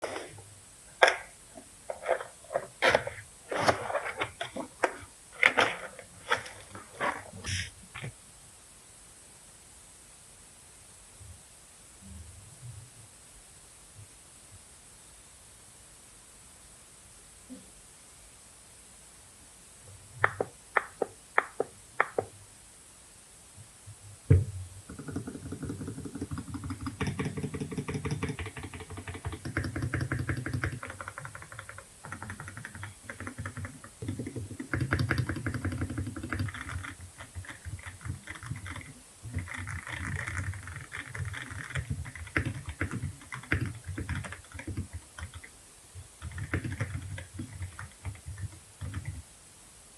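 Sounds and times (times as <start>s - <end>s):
mechanical keyboard typing: 24.9s - 45.5s, 46.2s - 49.2s.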